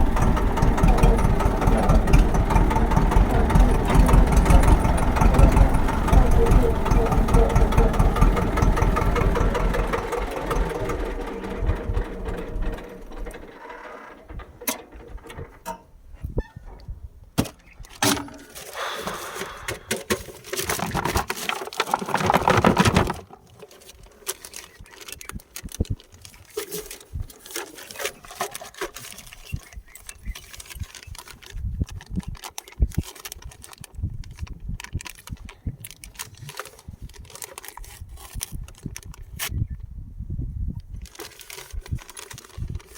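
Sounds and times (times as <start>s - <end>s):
tractor engine idling: 0.0s - 16.9s, 18.2s - 20.2s
rustling handling noises: 17.6s - 39.6s, 40.8s - 42.9s.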